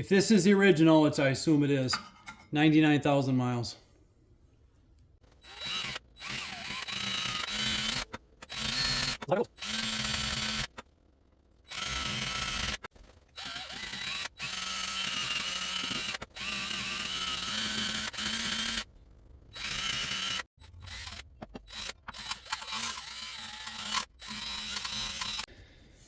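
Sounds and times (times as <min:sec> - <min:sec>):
power tool whirring: 0:05.4 - 0:10.8, 0:11.7 - 0:18.9, 0:19.5 - 0:25.5.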